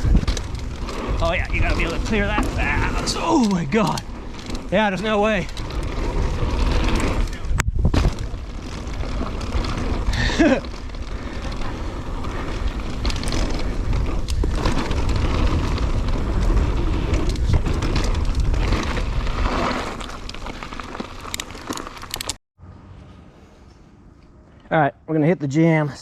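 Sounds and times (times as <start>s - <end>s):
wind rumble on microphone: 0.0s - 20.4s
bike rattling: 0.0s - 22.4s
tyres on dirt: 0.0s - 22.4s.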